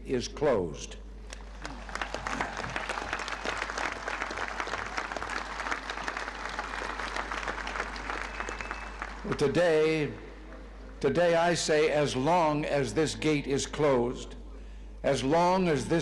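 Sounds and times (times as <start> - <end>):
crowd applauding: 1.3 - 9.9.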